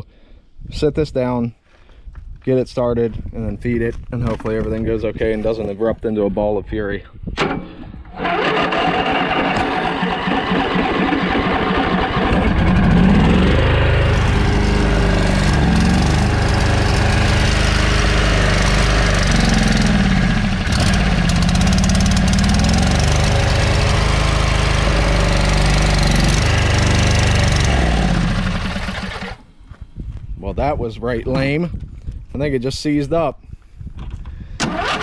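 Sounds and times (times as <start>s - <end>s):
lawn mower engine surging: 7.5s - 29.5s, 34.6s - 35.0s.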